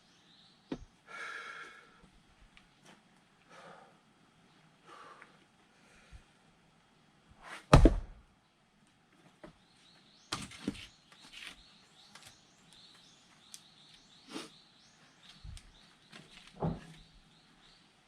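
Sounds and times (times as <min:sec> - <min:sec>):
axe striking a log: 0:07.7 - 0:08.2.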